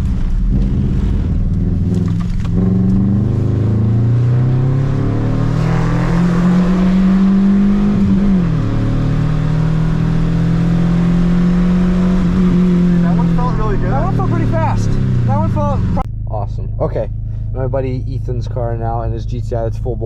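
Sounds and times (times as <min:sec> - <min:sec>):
car engine revving from inside cabin: 0:05.5 - 0:07.6.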